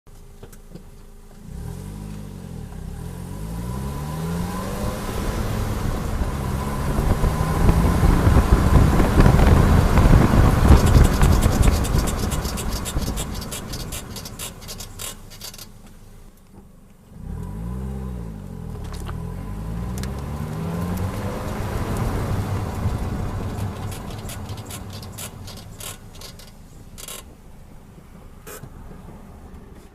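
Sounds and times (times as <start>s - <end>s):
brake scraping tick: 0.1s - 1.5s, 6.2s - 17.5s, 18.7s - 29.9s
car pulling away: 0.2s - 29.9s.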